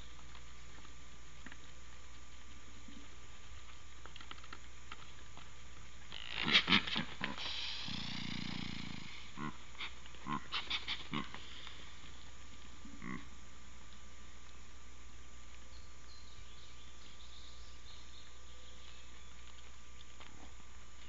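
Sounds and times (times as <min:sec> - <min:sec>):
deer snorting: 0:06.1 - 0:12.0, 0:12.8 - 0:13.4
deer hissing wheeze: 0:06.5 - 0:12.0.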